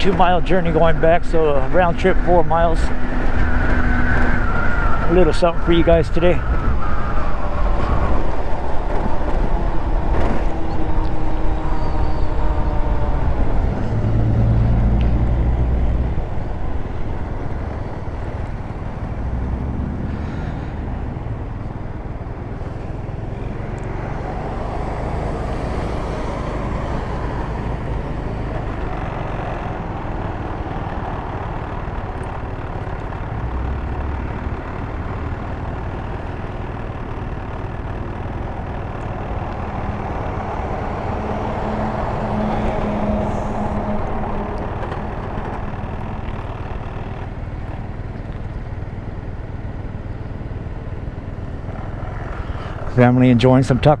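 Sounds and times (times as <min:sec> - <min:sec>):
road noise: 0:00.0 - 0:54.0
scooter engine: 0:00.0 - 0:54.0
siren: 0:01.0 - 0:22.4, 0:38.7 - 0:47.4.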